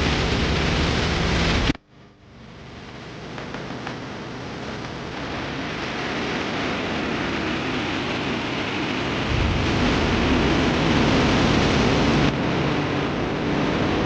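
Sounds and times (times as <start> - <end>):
deep rumble: 2.7 - 14.0
rushing water: 6.2 - 14.0.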